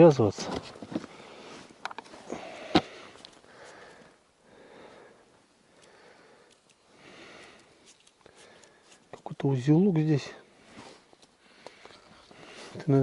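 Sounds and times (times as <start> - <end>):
man breathing and sniffing: 1.0 - 9.2, 10.4 - 12.9.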